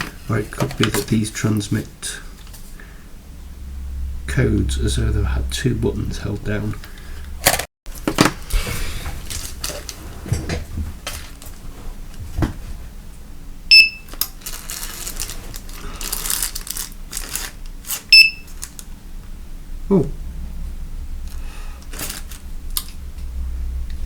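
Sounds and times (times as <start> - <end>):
plastic devices clicking and rustling: 0.0 - 1.3, 14.1 - 18.9
short high beeps: 13.7 - 14.0.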